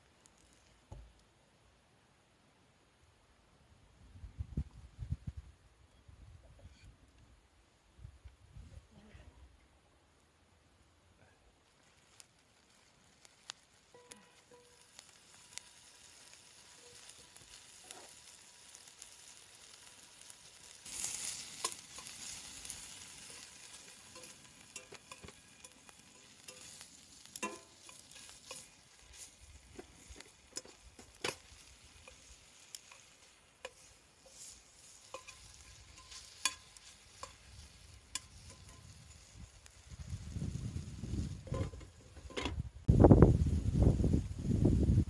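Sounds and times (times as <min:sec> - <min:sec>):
food sizzling in frying: 0:11.6 - 0:45.0.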